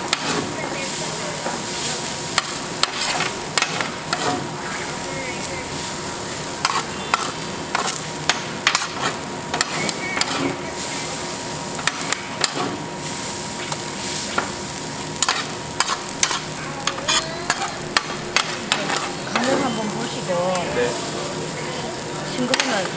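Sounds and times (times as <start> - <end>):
food sizzling on a griddle: 0.0 - 22.9
metal spatula scraping: 2.4 - 4.5, 6.6 - 8.0, 8.7 - 9.3, 10.2 - 10.9, 15.2 - 19.8.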